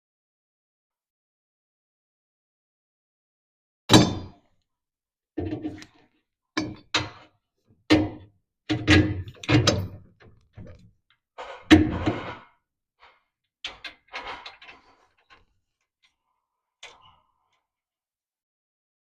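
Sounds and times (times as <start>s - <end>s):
metal parts knocking and clunking: 7.9s - 12.5s, 13.7s - 15.6s.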